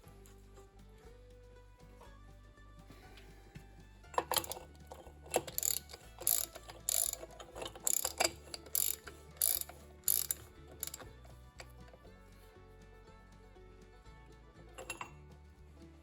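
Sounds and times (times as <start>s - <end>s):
ratchet wrench clicking: 4.2s - 11.8s, 14.8s - 15.1s.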